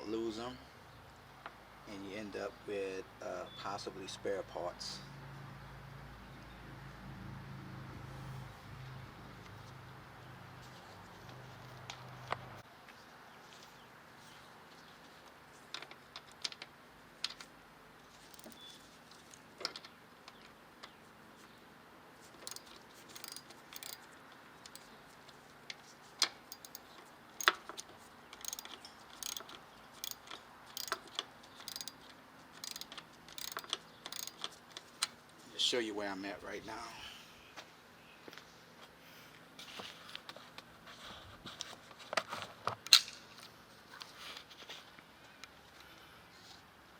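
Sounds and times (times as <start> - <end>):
hand tools clicking: 18.3 - 18.6, 22.4 - 24.0, 26.5 - 27.6, 28.4 - 32.0, 32.6 - 34.5.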